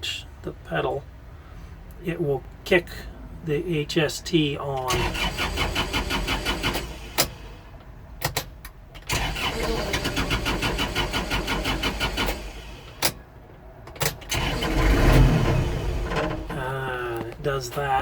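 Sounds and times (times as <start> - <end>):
tractor starter cranking engine: 4.8 - 7.6, 8.2 - 13.2, 13.9 - 17.9.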